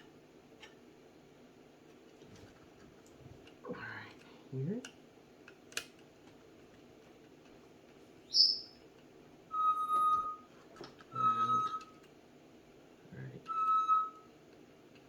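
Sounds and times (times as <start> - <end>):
high whistled notes: 9.5 - 12.0, 13.4 - 14.3.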